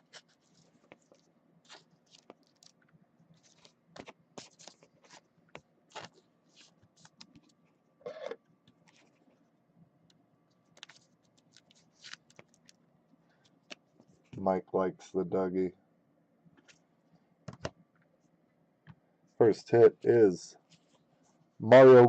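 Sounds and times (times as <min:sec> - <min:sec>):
cards and plastic sleeves rustling: 0:00.0 - 0:07.6, 0:10.6 - 0:12.8.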